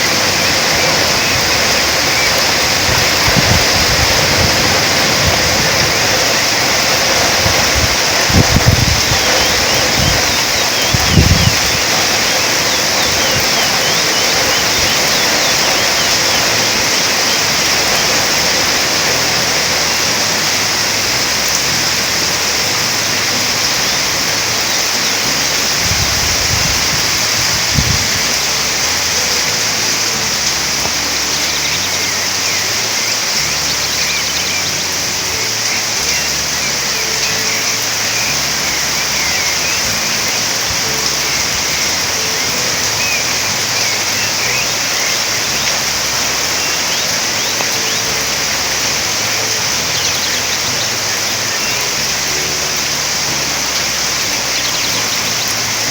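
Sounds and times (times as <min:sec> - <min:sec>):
heavy rain falling: 0:00.0 - 0:55.9
faint bird chirps: 0:09.0 - 0:18.8.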